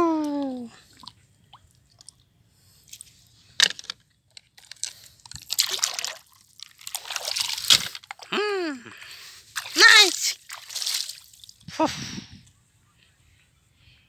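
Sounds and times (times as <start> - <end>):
water sloshing and splashing: 0.2 - 8.4, 9.2 - 11.7
vocal exclamation: 9.8 - 10.3.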